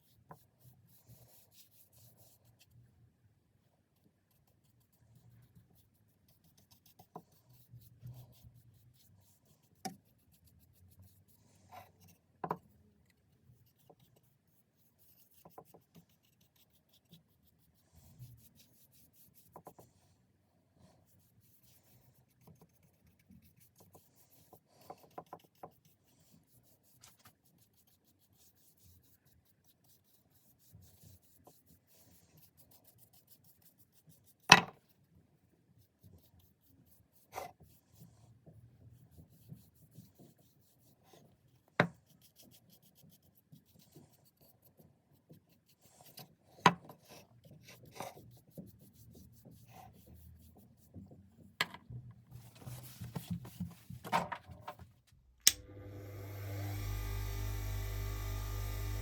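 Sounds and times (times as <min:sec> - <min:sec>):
rubbing and scraping on wood: 0:52.3 - 0:55.2.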